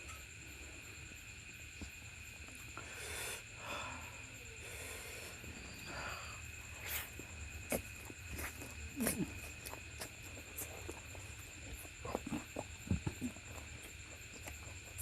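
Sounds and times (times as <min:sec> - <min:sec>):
faint high-pitched whine: 0:00.0 - 0:15.0
soft chewing sounds: 0:06.4 - 0:15.0.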